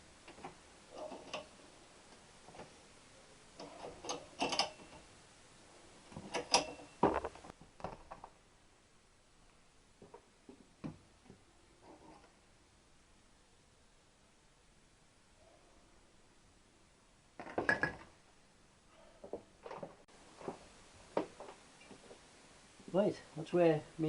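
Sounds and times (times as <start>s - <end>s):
metal pipes clinking: 3.6s - 5.0s, 6.3s - 7.0s.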